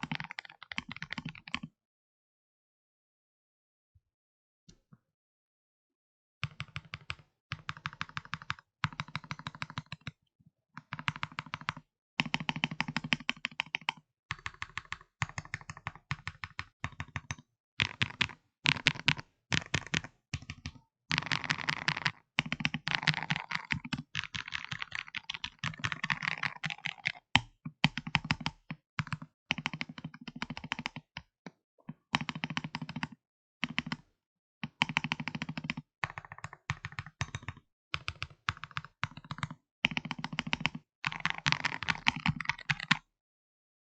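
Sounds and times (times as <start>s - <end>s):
mechanical keyboard typing: 0.0s - 1.7s, 6.4s - 10.1s, 10.8s - 31.1s, 32.2s - 34.0s, 34.6s - 43.1s.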